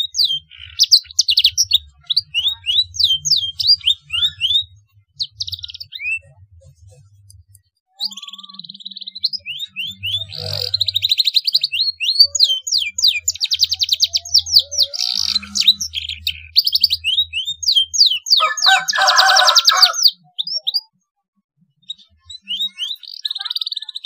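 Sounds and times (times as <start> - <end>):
canary singing trills: 0.0 - 21.0, 21.8 - 24.0.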